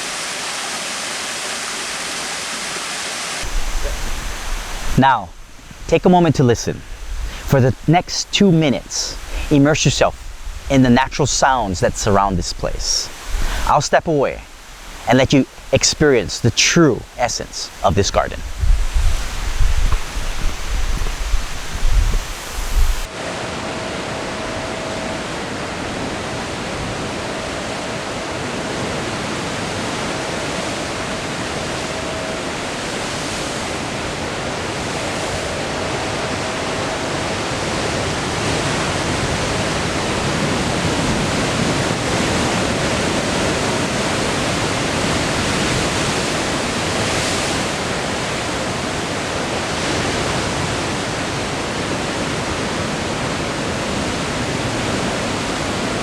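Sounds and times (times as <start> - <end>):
waterfall rushing: 0.0 - 56.0
wind buffeting microphone: 3.4 - 8.1, 8.8 - 13.7, 17.0 - 23.1.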